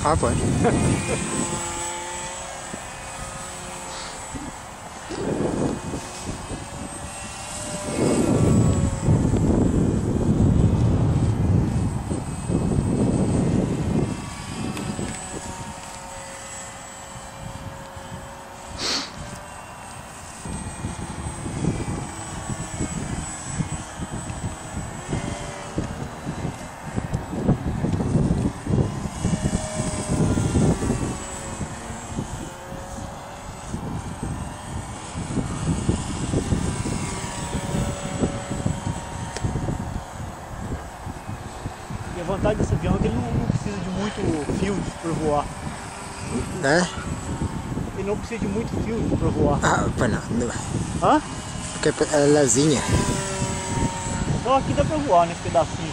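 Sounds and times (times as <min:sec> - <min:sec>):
model airplane propeller whine: 0:00.0 - 0:55.9
wind buffeting microphone: 0:00.0 - 0:55.9.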